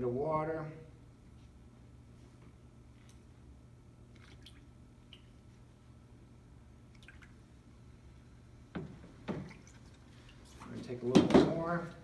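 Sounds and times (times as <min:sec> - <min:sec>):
low steady hum: 0:00.0 - 0:12.0
wet squishes and drips: 0:04.1 - 0:05.6, 0:06.9 - 0:07.5.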